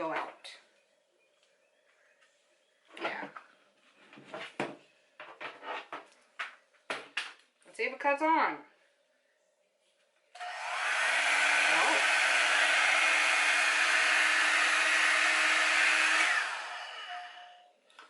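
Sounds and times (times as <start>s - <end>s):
hair dryer fan blowing: 10.4s - 17.7s.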